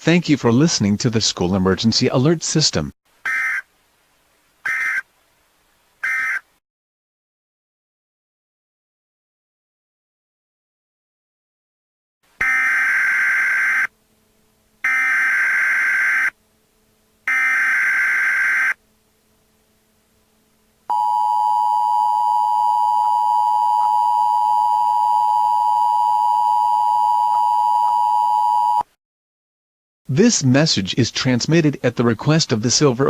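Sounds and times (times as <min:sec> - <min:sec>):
harsh buzzy data bursts: 0:17.3 - 0:18.8.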